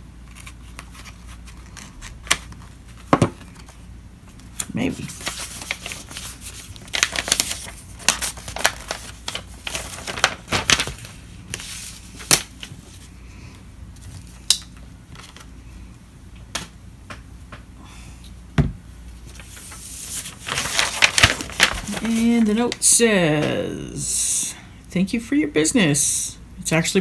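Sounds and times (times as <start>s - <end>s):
packaging crackling: 5.1s - 12.7s, 19.4s - 22.8s.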